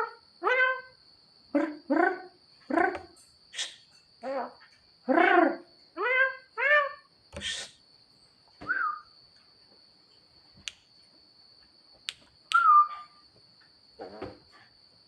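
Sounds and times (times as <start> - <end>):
myna whistling: 8.6 - 9.2, 12.5 - 13.2
bird clicks: 12.1 - 12.7.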